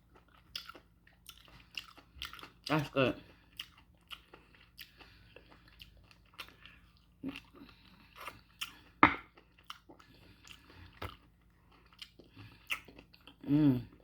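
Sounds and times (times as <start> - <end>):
chewing with lip smacking: 0.0 - 14.0.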